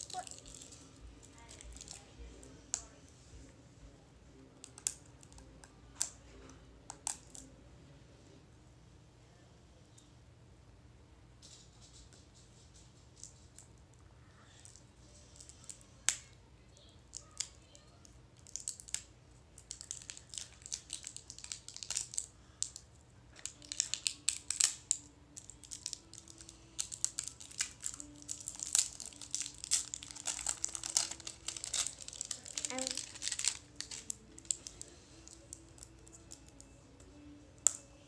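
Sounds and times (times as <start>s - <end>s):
plastic packaging crinkling: 0.0s - 2.1s, 19.6s - 22.8s, 23.4s - 36.4s.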